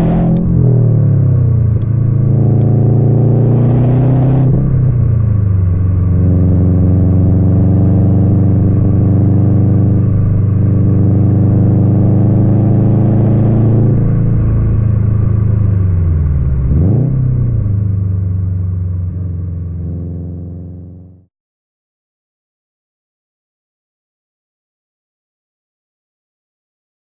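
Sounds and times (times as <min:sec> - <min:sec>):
car engine revving: 0:00.0 - 0:21.2.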